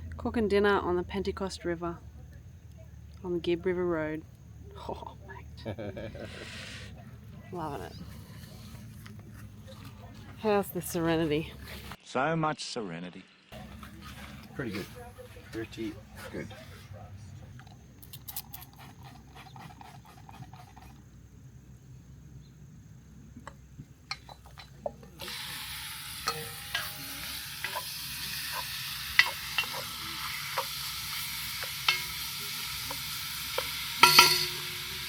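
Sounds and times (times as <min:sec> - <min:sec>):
stirring clicks and scrapes: 0:06.9 - 0:12.0, 0:13.6 - 0:21.1, 0:27.6 - 0:34.8
meat sizzling in a pot: 0:25.1 - 0:35.0.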